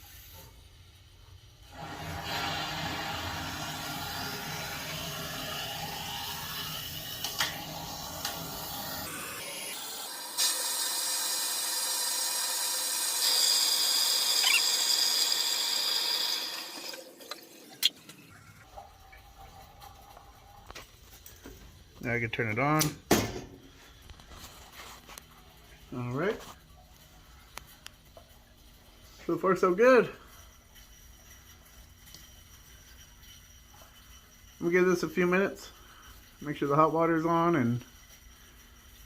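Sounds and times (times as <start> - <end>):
water rushing into tank: 1.7 - 9.1.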